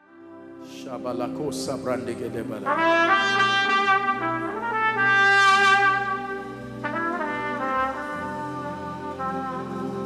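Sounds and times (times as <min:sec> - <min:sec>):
solo trumpet slow notes: 0:02.6 - 0:10.0.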